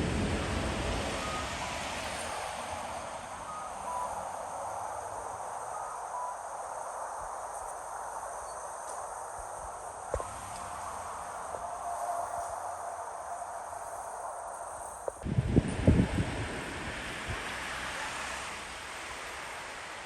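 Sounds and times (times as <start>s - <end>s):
passing vehicle: 0.0s - 6.8s, 15.1s - 20.0s
steady background hiss: 0.0s - 20.0s
faint electronic beeps: 1.0s - 15.2s.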